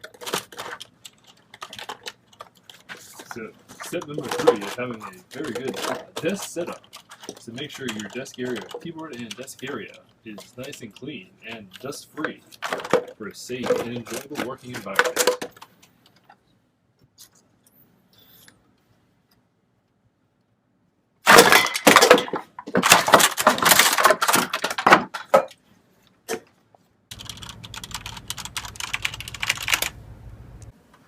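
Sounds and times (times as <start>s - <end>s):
hard objects clattering: 0.0s - 16.4s, 21.3s - 25.6s
low steady hum: 27.1s - 31.0s.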